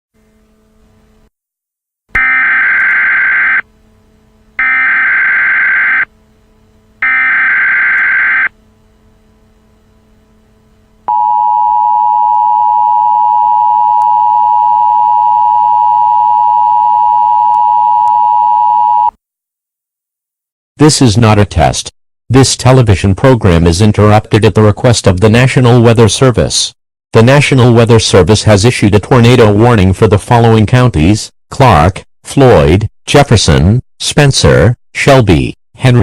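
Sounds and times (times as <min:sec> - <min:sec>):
two-tone attention signal: 0:02.2 - 0:03.6, 0:11.1 - 0:19.1.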